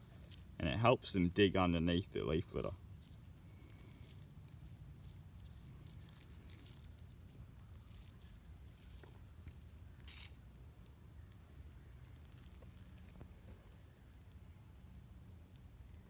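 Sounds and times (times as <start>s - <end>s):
low steady rumble: 0.0s - 16.0s
rustling in dry leaves: 2.5s - 13.4s.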